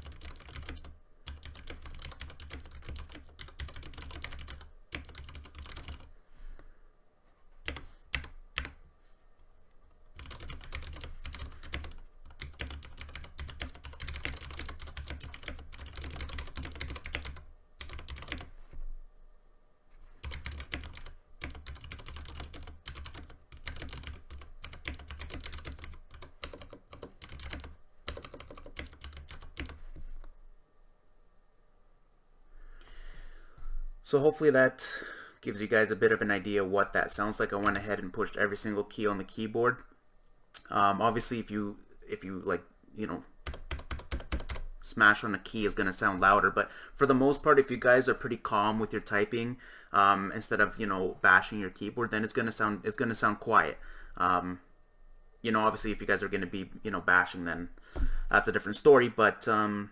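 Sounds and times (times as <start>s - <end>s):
mechanical keyboard typing: 0.0s - 6.1s, 10.2s - 18.5s, 20.2s - 29.8s, 43.4s - 44.7s.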